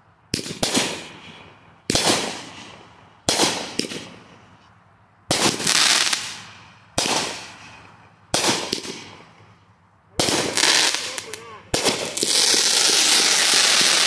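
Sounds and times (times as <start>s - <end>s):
fireworks bursts: 0.3s - 4.4s, 5.3s - 9.4s, 10.2s - 14.0s
fireworks crackle: 5.3s - 9.6s, 10.2s - 14.0s.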